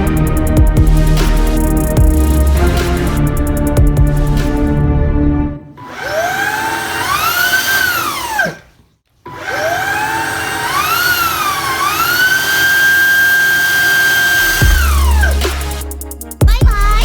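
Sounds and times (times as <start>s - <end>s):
vacuum motor whining: 5.7s - 14.9s.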